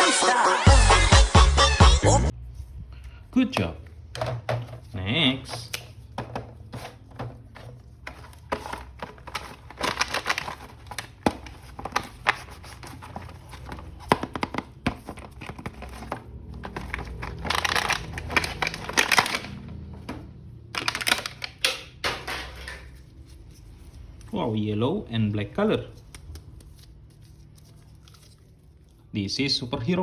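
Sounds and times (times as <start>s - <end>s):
plastic packaging crinkling and tearing: 8.2s - 14.0s, 15.2s - 19.9s, 20.8s - 21.7s.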